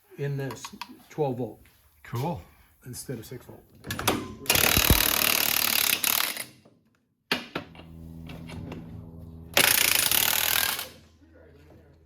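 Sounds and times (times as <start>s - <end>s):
motor-driven tool humming: 4.6s - 6.1s.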